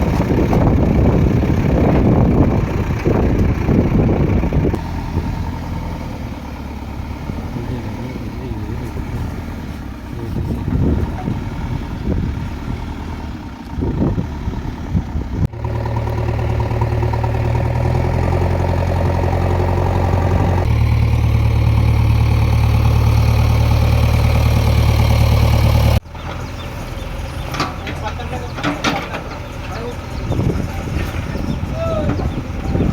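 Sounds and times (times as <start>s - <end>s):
diesel engine running: 0.0s - 32.9s
machinery noise: 4.7s - 13.7s, 15.6s - 32.9s.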